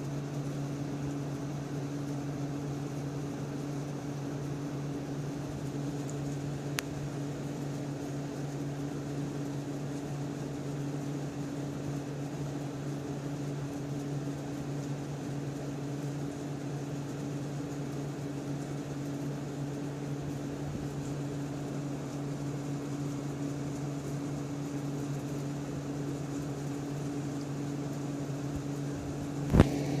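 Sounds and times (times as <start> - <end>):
machine hum: 18.2 - 30.0.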